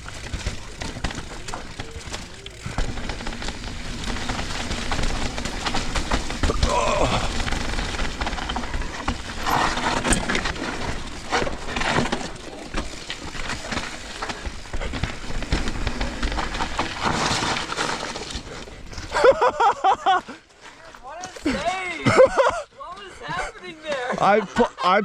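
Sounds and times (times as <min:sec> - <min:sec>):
bike knocks and rattles: 0:00.0 - 0:19.8
tyres rolling over mud and rocks: 0:00.0 - 0:24.7.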